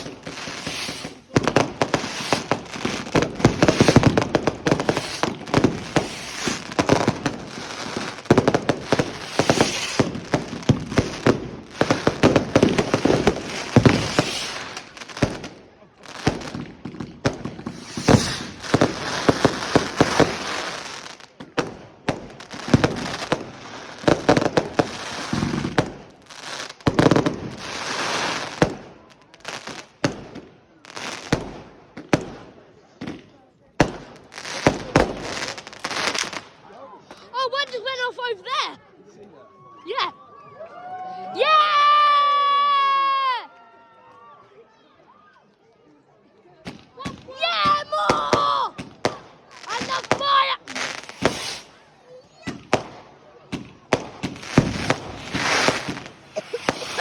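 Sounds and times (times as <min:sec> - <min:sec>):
fireworks bangs and crackles: 0:00.0 - 0:36.7, 0:46.6 - 0:57.0.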